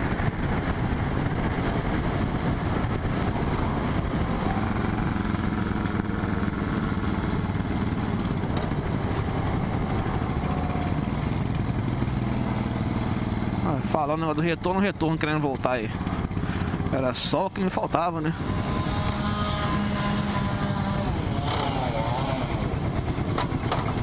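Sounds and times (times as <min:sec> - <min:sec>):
muffled motorcycle exhaust cruising: 0:00.0 - 0:24.0.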